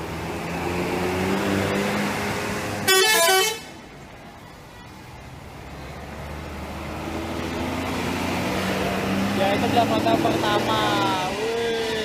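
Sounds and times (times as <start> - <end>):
engine hum: 0.0 - 12.0
multi-tone musical bus horn: 2.8 - 3.8.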